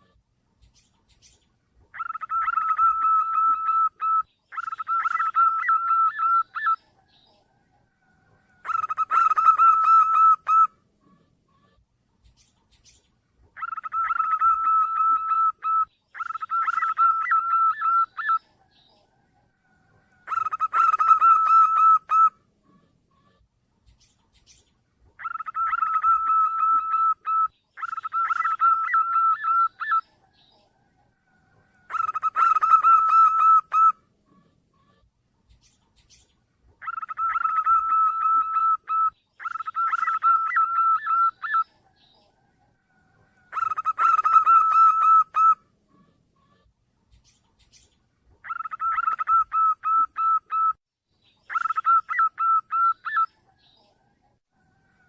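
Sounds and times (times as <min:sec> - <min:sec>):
dove cooing in trilled notes: 0:01.9 - 0:06.9, 0:08.6 - 0:10.7, 0:13.6 - 0:18.5, 0:20.2 - 0:22.3, 0:25.2 - 0:30.2, 0:31.8 - 0:34.4, 0:36.8 - 0:41.8, 0:43.4 - 0:45.6, 0:48.4 - 0:50.8, 0:51.5 - 0:53.4.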